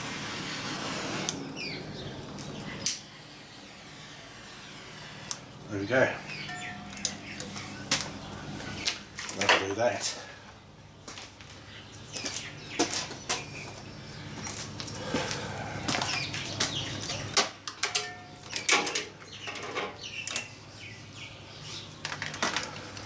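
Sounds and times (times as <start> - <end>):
wiring and plastic rustling: 21.8 - 23.0.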